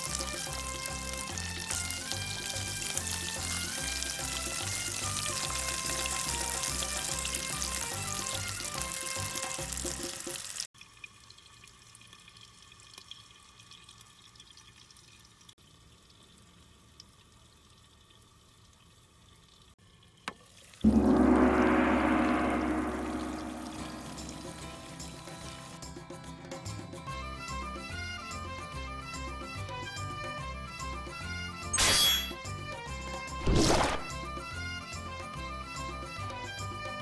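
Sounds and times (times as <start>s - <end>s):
food sizzling in a frying pan: 0.0s - 10.7s
struck tone ringing: 20.9s - 25.4s
background music with bass: 20.9s - 31.7s.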